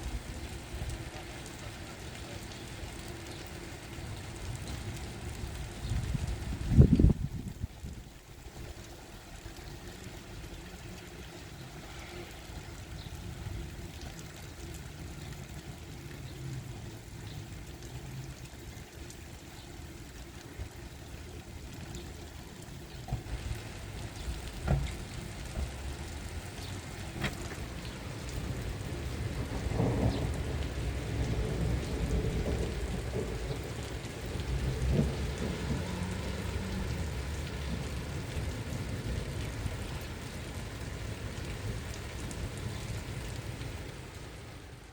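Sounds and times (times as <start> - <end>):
steady rain: 0.0 - 44.9
thunder rumbling: 28.1 - 39.4.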